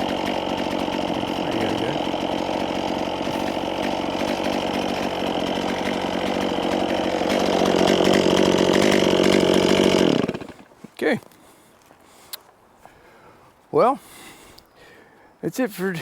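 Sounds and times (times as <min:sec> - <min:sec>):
chainsaw cutting log: 0:00.0 - 0:11.0.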